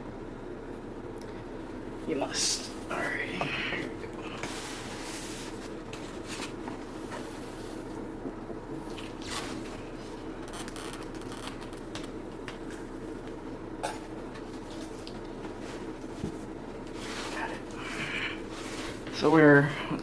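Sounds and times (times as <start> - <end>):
steady low hum: 0.0 - 20.0
packaging rustling: 9.0 - 12.2.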